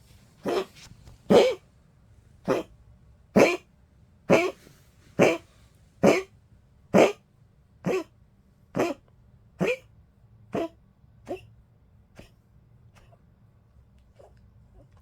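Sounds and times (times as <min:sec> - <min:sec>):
old dog coughing: 0:00.4 - 0:01.6, 0:02.4 - 0:02.7, 0:03.4 - 0:03.7, 0:04.3 - 0:06.3, 0:06.9 - 0:07.2, 0:07.8 - 0:08.1, 0:08.8 - 0:09.0, 0:09.6 - 0:09.9, 0:10.5 - 0:11.5, 0:12.2 - 0:12.4.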